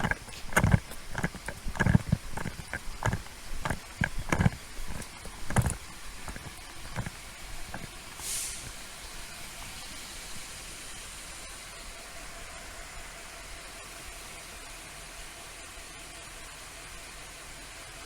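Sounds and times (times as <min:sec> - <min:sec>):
footsteps with dull knocks: 0:00.0 - 0:09.2.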